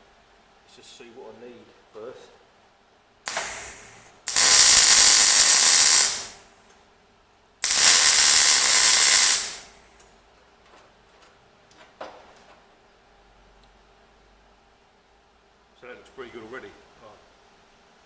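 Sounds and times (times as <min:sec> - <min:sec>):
welder crackling hiss: 0:03.3 - 0:06.4, 0:07.6 - 0:09.8.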